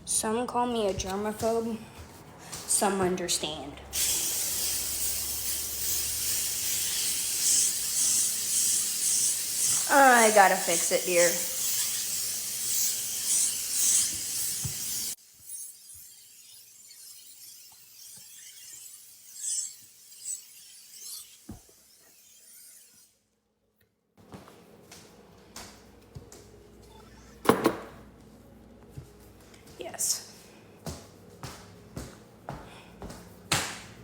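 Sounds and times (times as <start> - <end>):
aerosol can spraying: 3.9 - 15.2.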